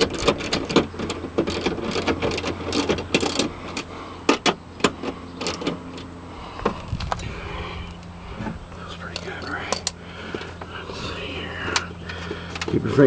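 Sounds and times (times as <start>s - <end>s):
clicks and rattles of metal parts: 0.0s - 6.1s, 9.1s - 10.5s
steady low hum: 0.0s - 13.0s.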